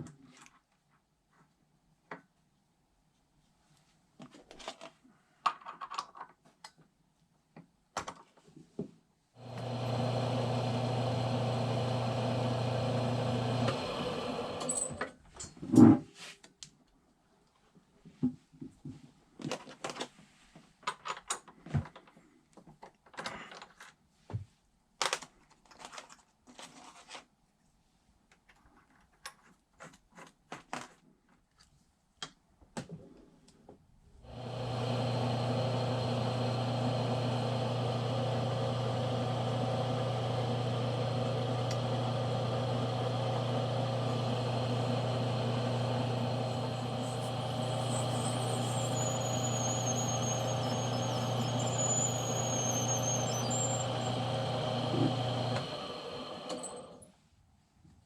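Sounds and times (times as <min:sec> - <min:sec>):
machine motor humming: 0:09.4 - 0:15.0, 0:34.2 - 0:57.0.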